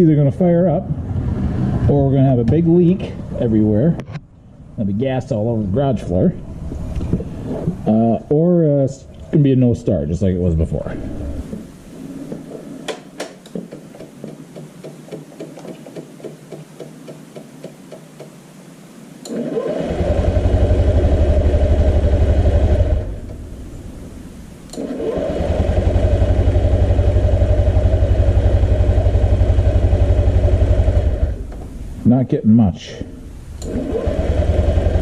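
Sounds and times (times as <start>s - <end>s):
electric starter cranking scooter: 19.3s - 23.4s, 24.7s - 31.5s, 33.6s - 35.0s.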